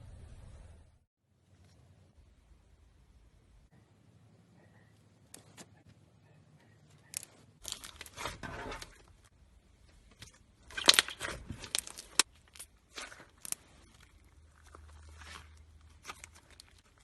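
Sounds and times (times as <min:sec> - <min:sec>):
slime crackling and popping: 0:10.6 - 0:17.0.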